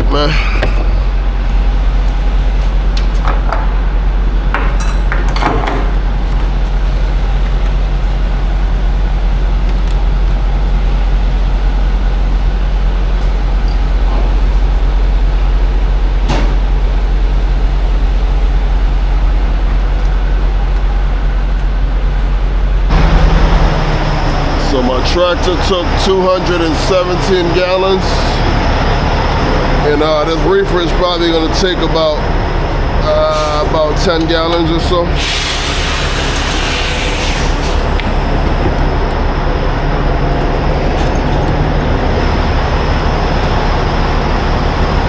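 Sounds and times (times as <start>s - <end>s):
diesel truck idling: 0.0s - 45.0s
metallic clicks and knocks: 4.4s - 6.6s.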